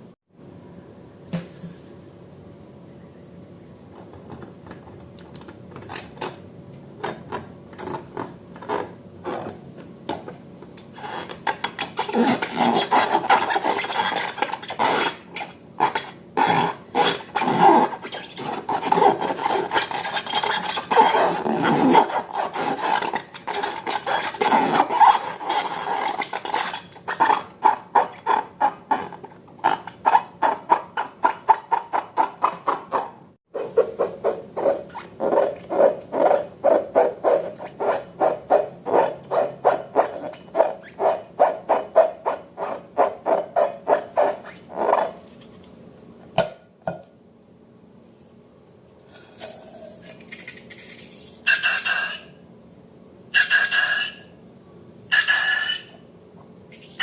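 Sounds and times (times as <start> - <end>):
utensil stirring slime: 10.9 - 33.0.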